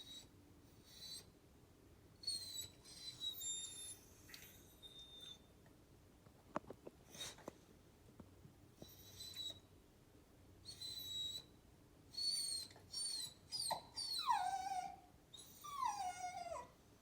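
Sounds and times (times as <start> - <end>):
dog whining: 0.0 - 1.4, 2.2 - 5.5, 8.8 - 9.7, 10.6 - 11.5, 12.1 - 16.8.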